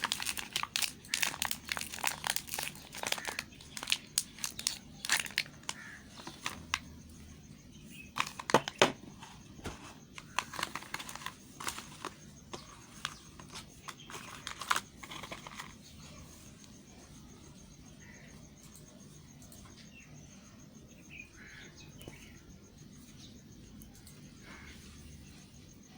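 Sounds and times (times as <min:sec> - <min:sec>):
soap bar crunching: 0:00.0 - 0:06.8.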